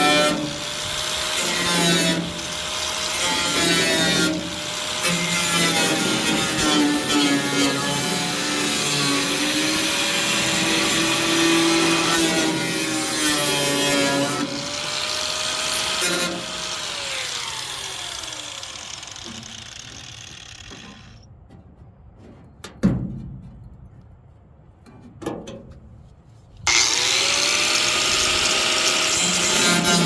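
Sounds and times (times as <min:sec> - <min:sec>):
power cutting tool whining: 0:00.0 - 0:21.2, 0:26.7 - 0:30.0.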